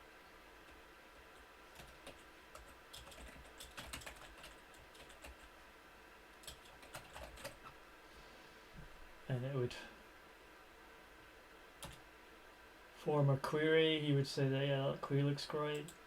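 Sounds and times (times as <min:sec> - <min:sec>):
faint typing on a keyboard: 0:00.2 - 0:05.6, 0:06.4 - 0:07.8, 0:11.8 - 0:12.1, 0:15.0 - 0:16.0.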